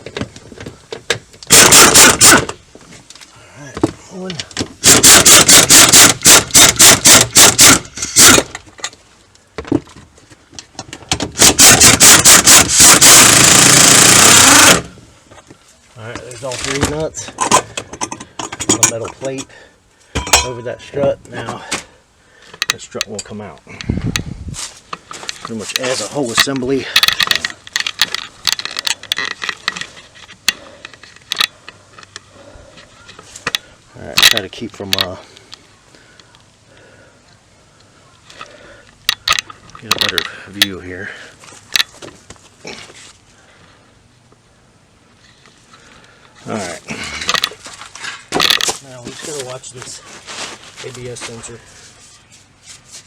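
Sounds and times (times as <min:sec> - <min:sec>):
impact wrench hammering: 0:01.5 - 0:02.5, 0:04.8 - 0:08.5, 0:11.3 - 0:14.9
metallic clanks of tools: 0:20.2 - 0:21.0.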